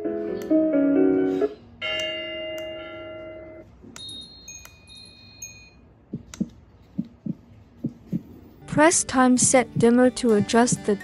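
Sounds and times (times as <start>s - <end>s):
wind chimes tinkling: 4.0s - 5.9s.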